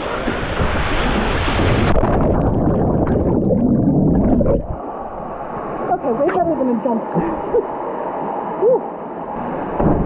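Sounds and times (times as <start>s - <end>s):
muffled underwater churning: 0.0s - 6.5s.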